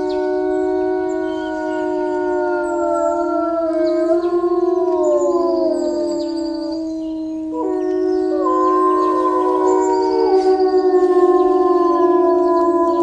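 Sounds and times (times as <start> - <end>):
chorus of long howls: 0.0 - 13.0
faint bird chirps: 5.1 - 11.5.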